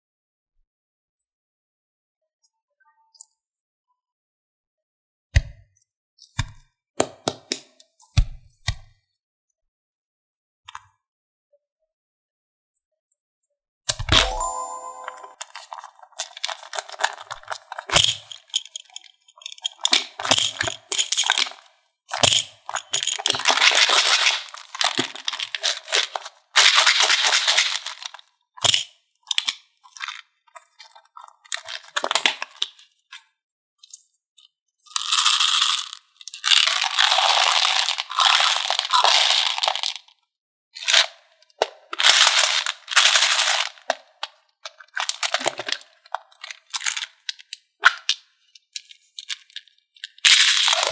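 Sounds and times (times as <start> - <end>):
candies crunching in slime: 23.2 - 28.2, 35.0 - 40.0.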